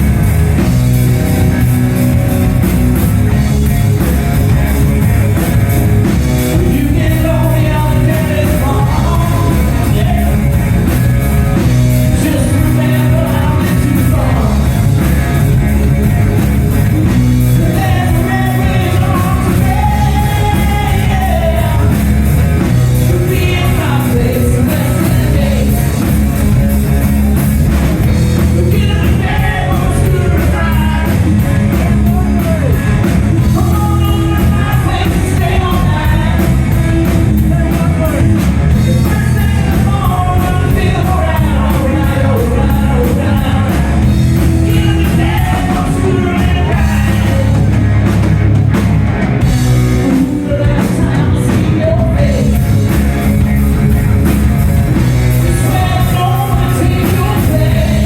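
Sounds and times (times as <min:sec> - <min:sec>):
live rock band playing: 0:00.0 - 0:58.0
man singing: 0:06.0 - 0:11.0, 0:11.6 - 0:15.3, 0:17.0 - 0:26.4, 0:28.0 - 0:47.8, 0:50.0 - 0:53.0, 0:55.4 - 0:58.0.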